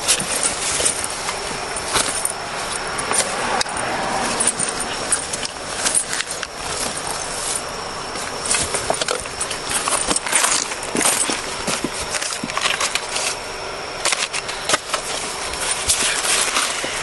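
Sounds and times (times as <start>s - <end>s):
light metallic jingling: 0.0s - 13.4s
steady background hiss: 0.0s - 17.0s.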